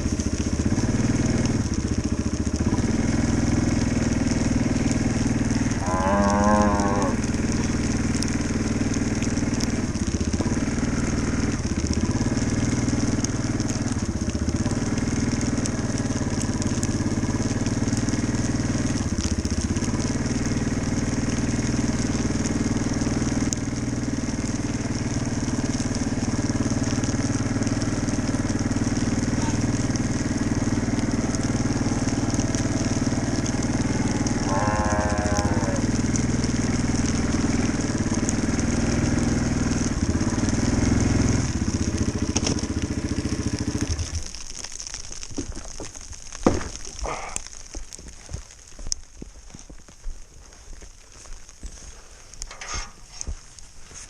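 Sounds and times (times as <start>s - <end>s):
atv engine running: 0.0s - 54.0s
crunching over snow: 4.2s - 54.0s
cow mooing: 5.6s - 7.4s, 33.9s - 36.0s.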